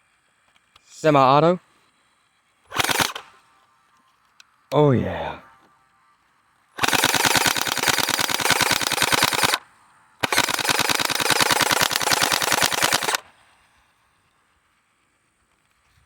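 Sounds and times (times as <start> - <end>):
toy blaster rapid-fire shots: 2.7 - 3.4, 6.8 - 9.6, 10.2 - 13.3.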